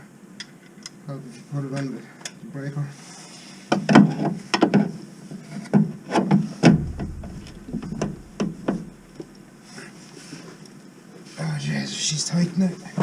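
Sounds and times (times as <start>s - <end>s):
metal clanks and knocks: 6.7s - 9.4s.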